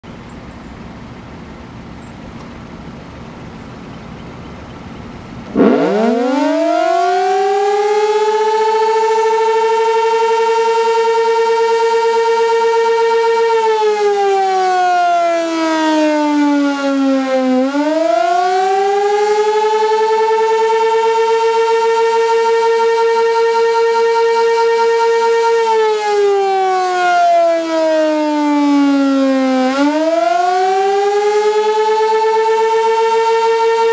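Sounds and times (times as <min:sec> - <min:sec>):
warning siren winding up and down: 0:05.3 - 0:33.9.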